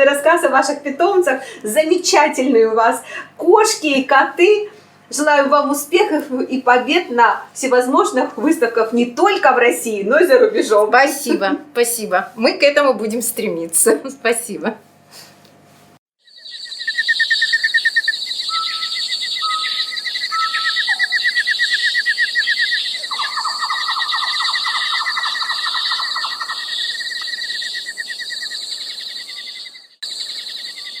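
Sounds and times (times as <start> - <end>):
buzzy bird trill: 16.2 - 31.0
songbirds chirping and trilling: 16.2 - 31.0.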